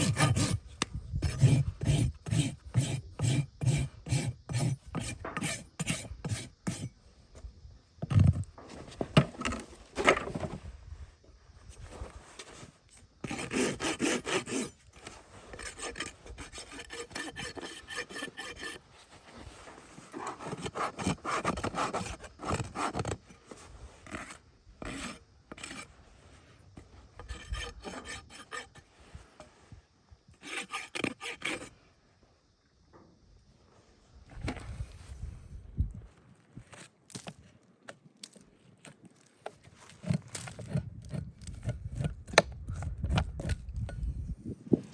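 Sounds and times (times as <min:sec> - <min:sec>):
rasp scraping hoof: 0:00.0 - 0:07.0, 0:12.1 - 0:26.0, 0:27.1 - 0:29.5, 0:30.4 - 0:31.7.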